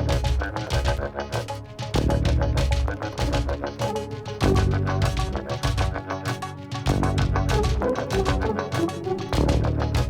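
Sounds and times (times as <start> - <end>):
music with beat and bass line: 0.0 - 10.0.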